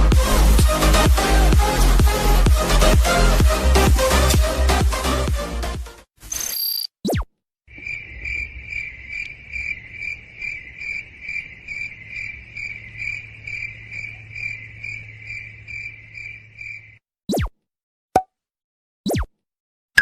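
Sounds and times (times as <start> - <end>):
cricket chirping: 7.7 - 17.0.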